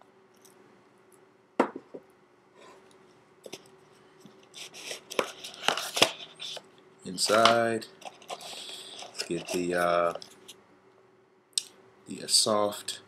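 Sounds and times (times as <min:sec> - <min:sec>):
packaging clicks and rustles: 0:04.6 - 0:06.6, 0:07.2 - 0:10.2.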